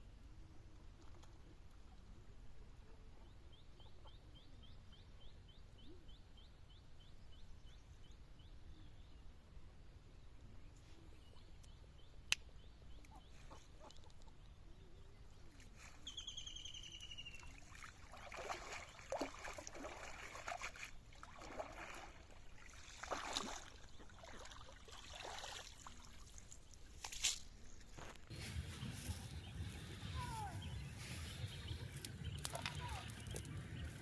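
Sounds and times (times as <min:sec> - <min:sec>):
water splashing and sloshing: 0:17.6 - 0:27.3.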